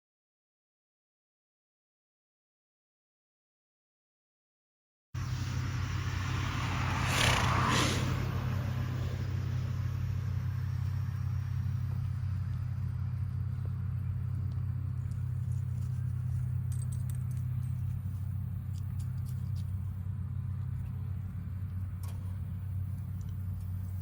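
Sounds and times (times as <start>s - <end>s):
vehicle droning: 5.2s - 24.0s
faint clicks or jingles: 14.3s - 19.8s.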